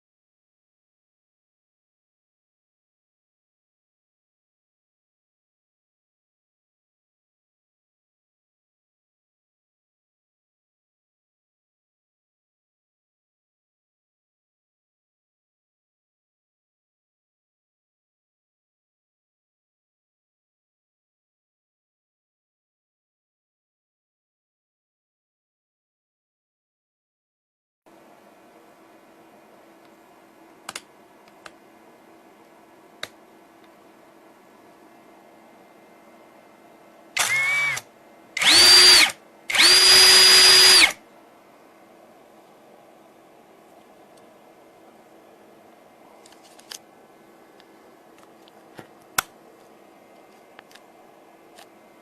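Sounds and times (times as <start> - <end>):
faint steady hum: 27.9 - 52.0.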